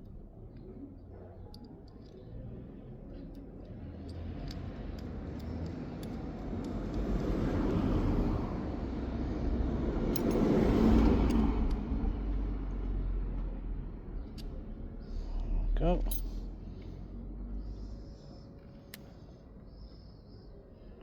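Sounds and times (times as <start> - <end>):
road vehicle passing: 2.4 - 19.6.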